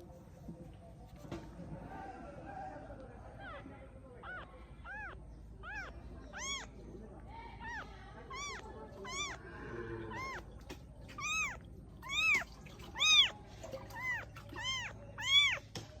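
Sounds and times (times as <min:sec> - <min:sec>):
cat meowing: 0:03.4 - 0:06.8, 0:07.6 - 0:10.5, 0:11.1 - 0:15.7.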